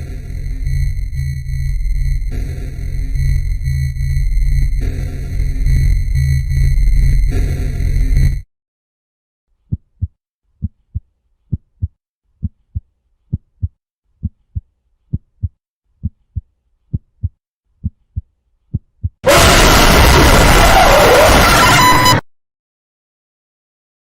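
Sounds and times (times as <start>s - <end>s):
loud burst of noise: 0.0s - 8.4s, 19.2s - 22.2s
heartbeat thumps: 9.7s - 19.2s.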